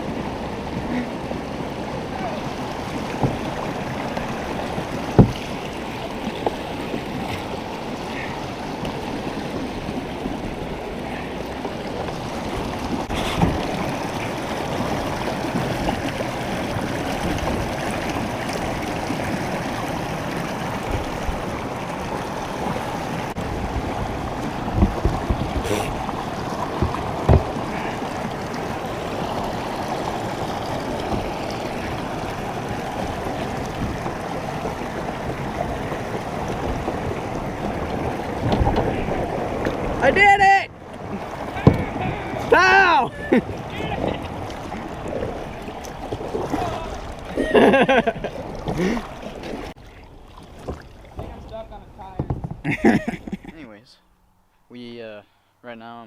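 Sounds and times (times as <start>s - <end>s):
creek water rushing: 0.0s - 54.1s
sharp knocks: 5.1s - 5.4s.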